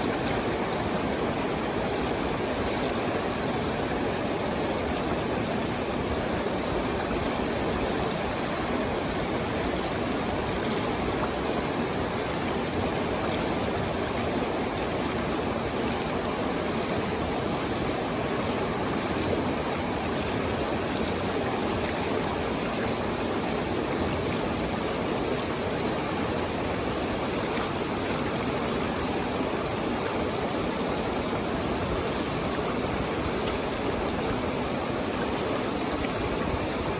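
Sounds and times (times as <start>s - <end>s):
stream water flowing: 0.0s - 36.9s.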